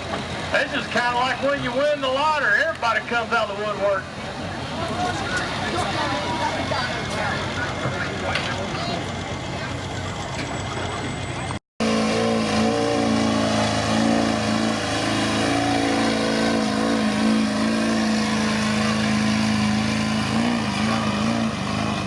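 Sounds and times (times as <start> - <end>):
engine at high rpm under load: 10.8 - 22.0.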